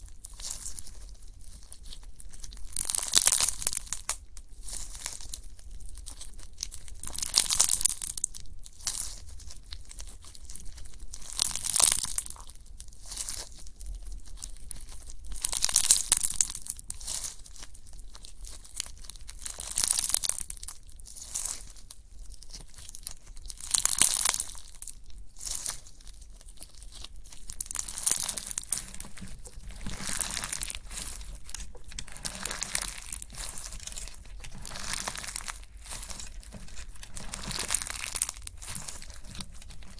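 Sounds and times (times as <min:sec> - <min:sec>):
slime squelching and popping: 0:00.2 - 0:13.6, 0:14.2 - 0:39.9.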